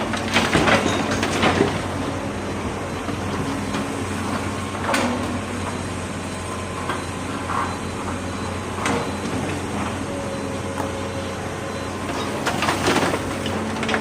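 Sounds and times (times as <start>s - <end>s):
excavator diesel engine running: 0.0s - 14.0s.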